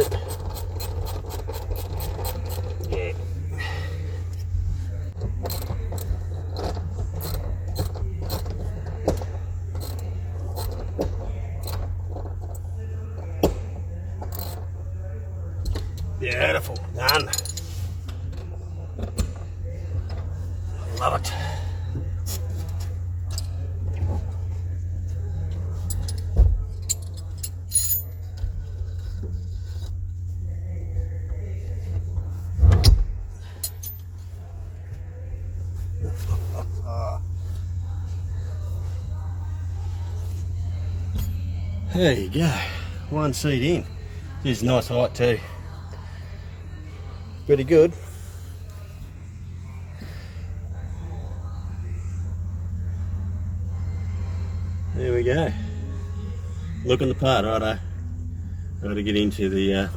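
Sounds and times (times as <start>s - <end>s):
steady low hum: 0.0s - 59.9s
metallic clinks and rattles: 16.8s - 17.8s, 25.8s - 29.1s, 33.4s - 34.2s.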